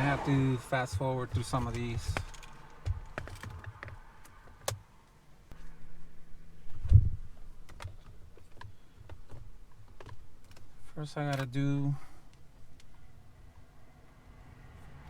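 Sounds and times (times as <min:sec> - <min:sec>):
handling clicks and knocks: 0:00.6 - 0:04.9, 0:06.7 - 0:13.0.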